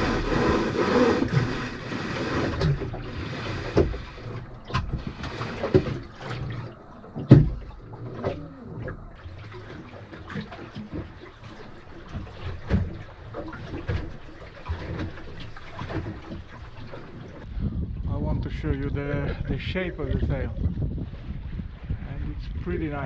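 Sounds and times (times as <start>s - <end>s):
splashes and thumps: 0.0s - 17.5s
water lapping against boat hull: 0.0s - 23.0s.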